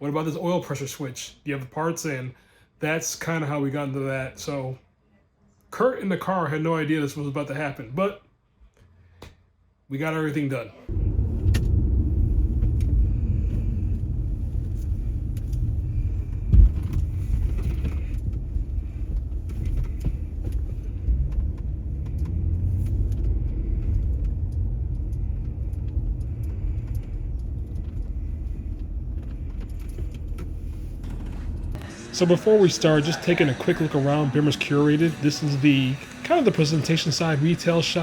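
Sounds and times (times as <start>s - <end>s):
car road rumble: 10.9s - 38.0s.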